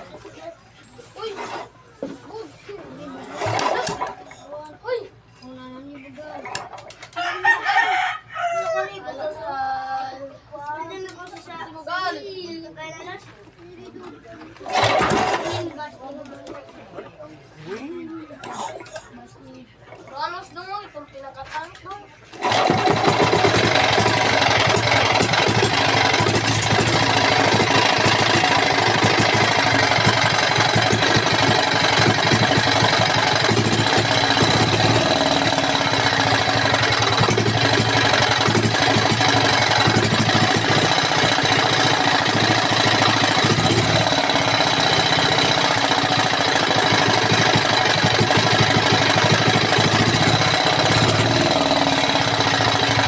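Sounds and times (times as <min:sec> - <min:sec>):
engine starting and idling: 0:03.3 - 0:04.2, 0:14.6 - 0:15.8, 0:22.4 - 0:53.0.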